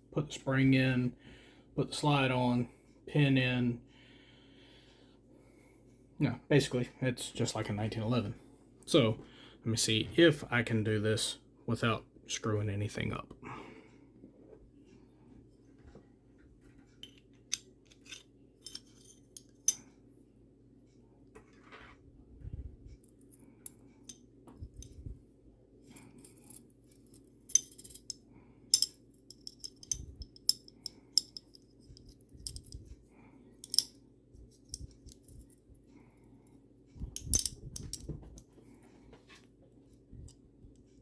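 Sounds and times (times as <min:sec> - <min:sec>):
faint low hum: 0:00.0 - 0:41.0
metal pistol parts clicking: 0:17.0 - 0:19.8, 0:26.2 - 0:32.8, 0:33.6 - 0:34.0, 0:34.6 - 0:35.5, 0:37.2 - 0:38.1.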